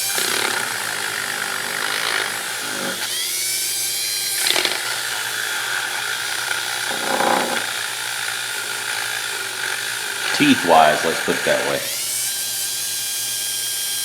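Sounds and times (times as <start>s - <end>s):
rotary tool grinding metal: 0.0s - 3.1s, 4.4s - 8.8s.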